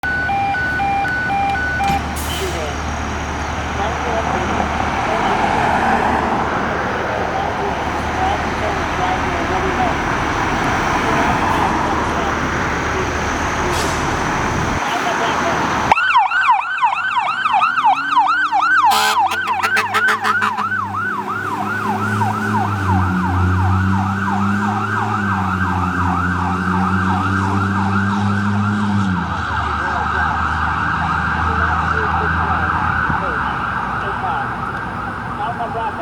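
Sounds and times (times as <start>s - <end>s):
fire engine siren yelp: 0.0s - 36.0s
air horn blast: 18.0s - 20.8s.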